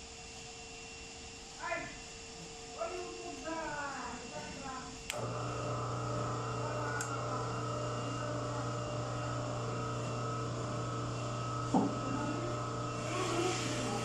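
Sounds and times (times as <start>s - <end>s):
lathe motor humming: 5.1s - 14.0s.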